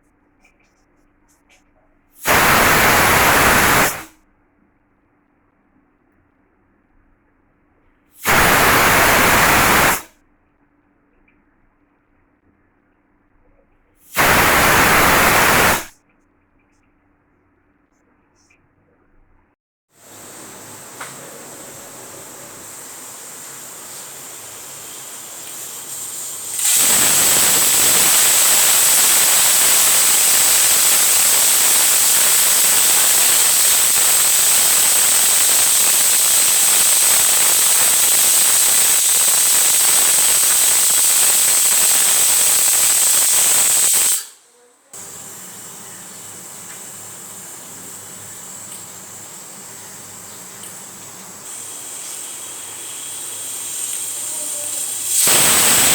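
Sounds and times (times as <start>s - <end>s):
faint hiss: 2.2s - 4.2s, 8.2s - 10.1s, 14.0s - 15.9s, 20.0s - 55.9s
pressure cooker steam hiss: 2.2s - 4.2s, 8.1s - 10.1s, 14.0s - 16.0s, 19.9s - 55.9s.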